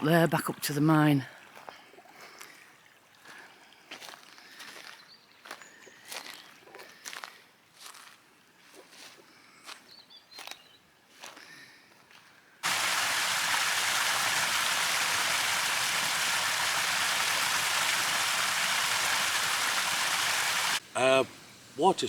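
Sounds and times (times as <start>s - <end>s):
rush of running water: 12.6s - 22.0s.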